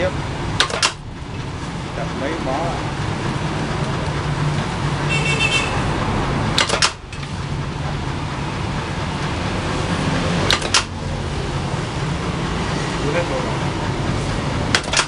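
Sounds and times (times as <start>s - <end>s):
blade cutting with sharp snaps: 10.5s - 10.9s.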